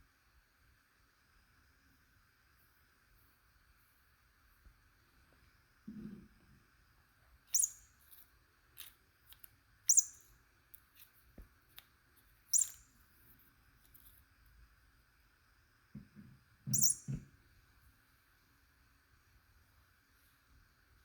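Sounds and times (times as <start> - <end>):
high bird-like chirps: 7.5 - 7.9, 9.9 - 10.4, 12.5 - 12.9, 16.7 - 17.2.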